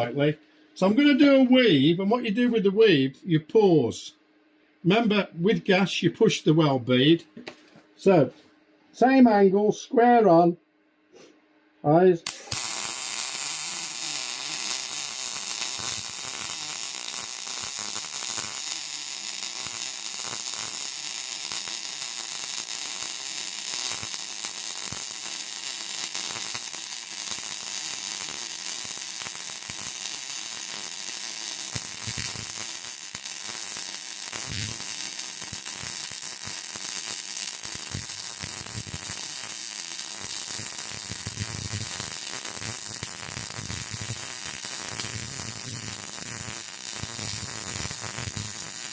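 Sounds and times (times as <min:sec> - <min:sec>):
welding arc on steel: 0:12.2 - 0:48.9.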